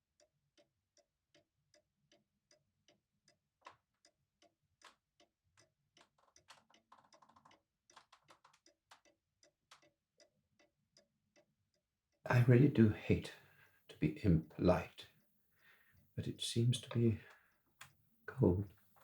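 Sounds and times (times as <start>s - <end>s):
clock ticking: 4.0s - 11.5s, 16.2s - 17.5s.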